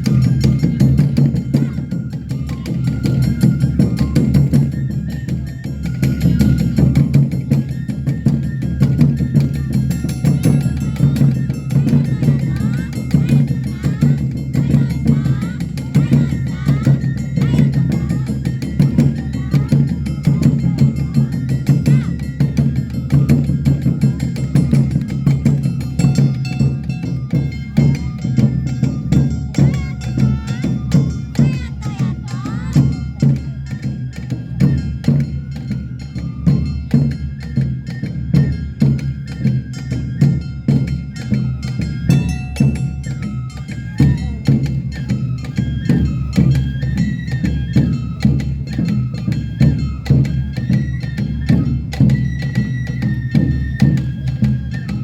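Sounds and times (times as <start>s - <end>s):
drums and percussion beating: 0.0s - 55.0s
high melody line: 40.2s - 46.6s
gliding melody line: 42.1s - 44.5s.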